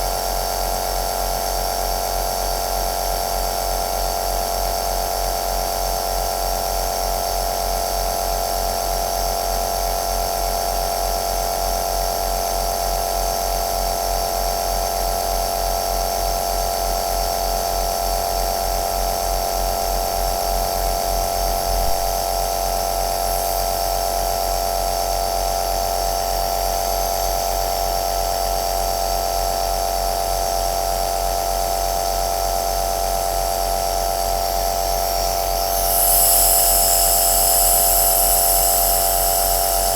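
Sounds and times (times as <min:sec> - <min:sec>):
airy hiss: 0:23.1 - 0:24.4, 0:34.4 - 0:39.9
nebulizer motor hum: 0:23.1 - 0:24.4, 0:34.2 - 0:39.9.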